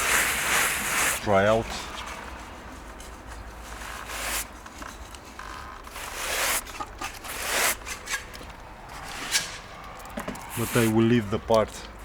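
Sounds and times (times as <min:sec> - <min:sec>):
rough scraping strokes: 0:05.8 - 0:08.4, 0:10.4 - 0:11.1.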